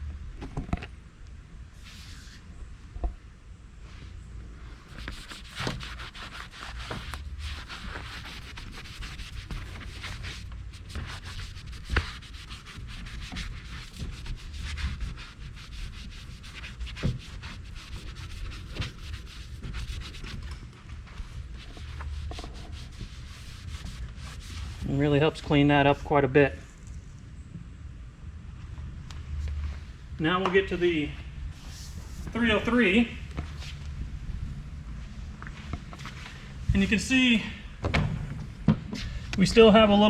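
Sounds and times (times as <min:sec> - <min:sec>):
eraser scrubbing plastic hull: 0:04.9 - 0:20.5, 0:21.5 - 0:25.0.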